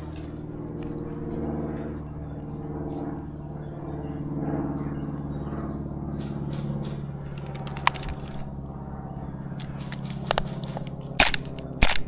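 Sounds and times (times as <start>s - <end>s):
pulsing engine drone: 0.0s - 12.0s
faint clicks: 6.2s - 8.4s.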